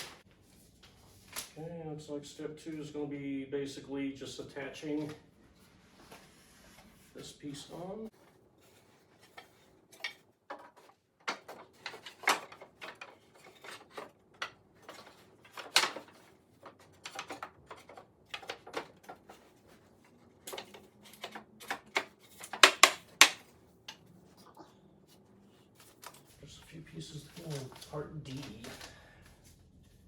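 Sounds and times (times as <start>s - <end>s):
wooden parts knocking: 9.2s - 24.0s.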